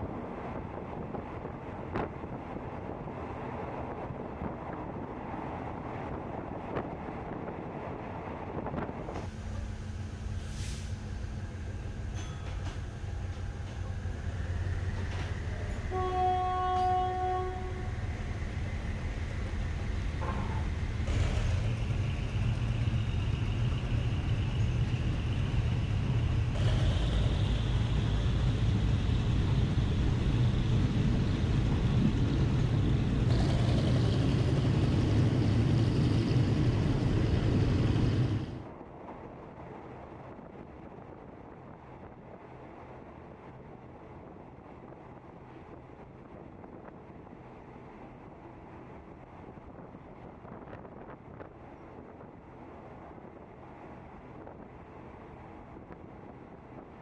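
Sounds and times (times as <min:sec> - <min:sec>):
train rumbling: 0:00.0 - 0:57.0
train horn blast: 0:15.9 - 0:18.0.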